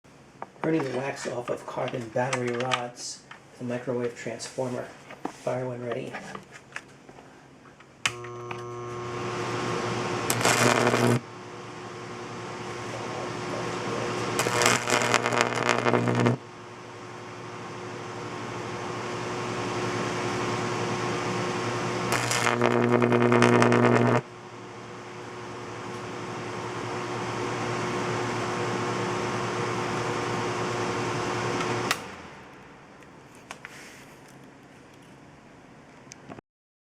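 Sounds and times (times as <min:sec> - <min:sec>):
electric arcs crackling and sizzling: 0:08.1 - 0:32.6
transformer humming: 0:08.1 - 0:33.0.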